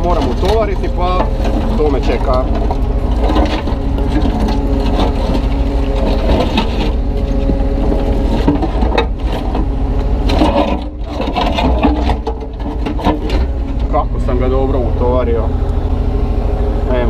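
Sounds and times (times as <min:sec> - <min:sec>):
concrete chunks hitting bucket: 0:00.0 - 0:14.0
excavator diesel engine running: 0:00.0 - 0:17.0.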